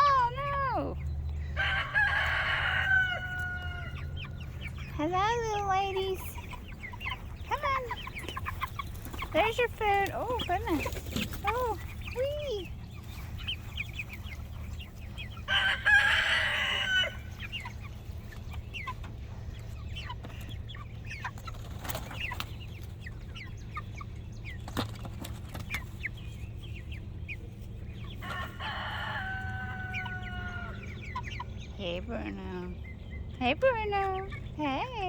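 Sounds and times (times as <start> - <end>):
chickens peeping and clucking: 0.0 - 35.0
rooster crowing: 1.6 - 4.2, 15.5 - 17.3, 28.3 - 31.0.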